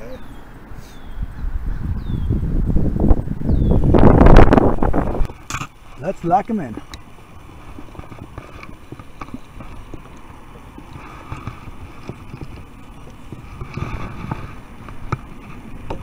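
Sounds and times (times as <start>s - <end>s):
wind rumble on microphone: 1.0s - 6.0s, 6.7s - 16.0s
fishing rods clicking and knocking: 5.2s - 5.8s, 7.8s - 16.0s.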